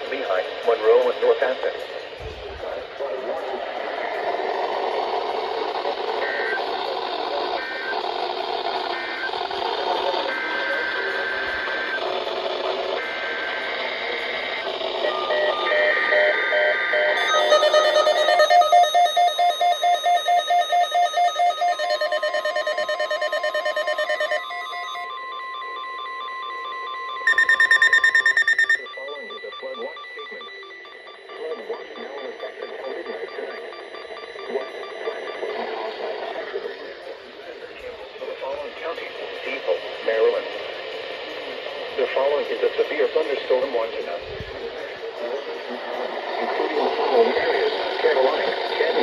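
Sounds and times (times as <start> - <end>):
radio static: 0.0 - 18.9, 27.3 - 49.0
buzzy data tones: 0.0 - 40.4
steady warning alarm tone: 0.0 - 49.0
rapid pulsing alert beeps: 3.8 - 40.2.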